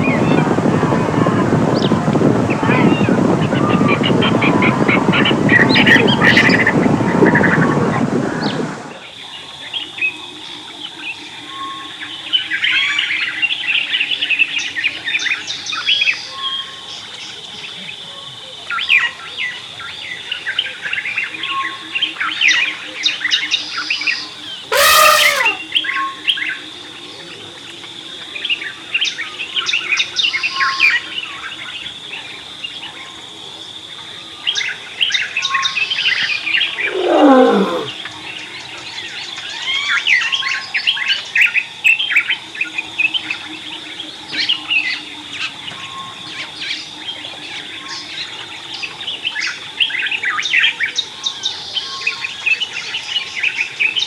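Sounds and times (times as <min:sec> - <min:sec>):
birds chirping and calling: 0:24.7 - 0:25.6
call sliding down in pitch: 0:24.7 - 0:25.6, 0:36.8 - 0:37.9
loud harsh animal call: 0:24.7 - 0:25.6, 0:36.8 - 0:38.0.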